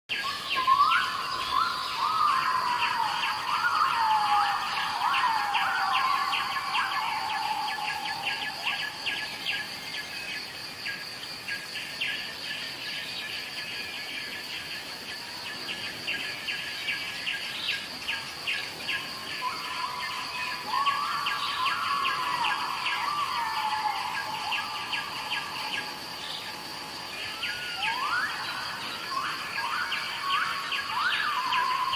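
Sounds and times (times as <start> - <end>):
birds singing whistled phrases: 0.1 - 9.8, 17.7 - 31.9
high insect drone: 0.1 - 31.9
rapid insect chirping: 0.1 - 31.9.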